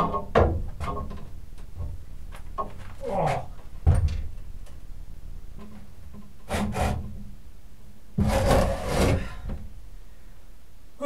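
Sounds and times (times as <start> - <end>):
knock on metal parts: 0.0 - 2.9
iron parts scraping and rubbing: 0.0 - 7.4, 8.2 - 9.8.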